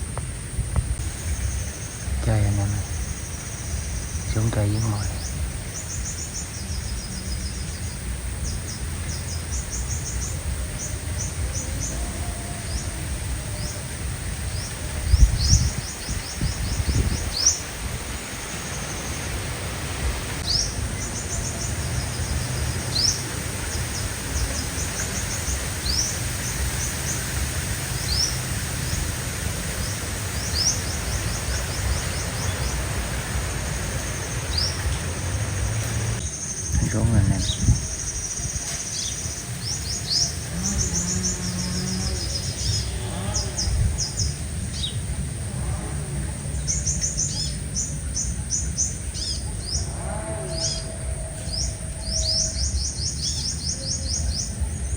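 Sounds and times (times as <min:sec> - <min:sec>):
birds calling with high trills: 0:01.0 - 0:54.9.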